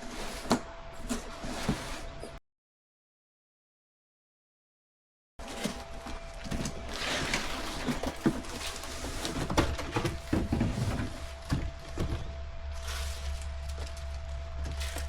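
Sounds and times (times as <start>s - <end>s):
knocks clicks and rustles of handling: 5.5s - 12.4s.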